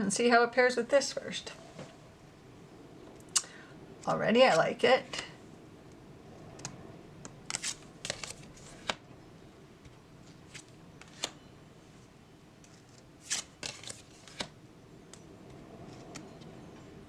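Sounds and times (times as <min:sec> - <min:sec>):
cards clicking and snapping: 0:06.6 - 0:09.0, 0:10.5 - 0:11.4, 0:12.7 - 0:15.2.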